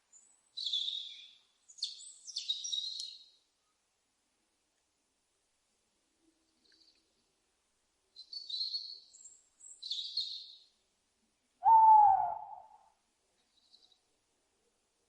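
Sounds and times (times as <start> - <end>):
owl calls: 11.6 - 12.9.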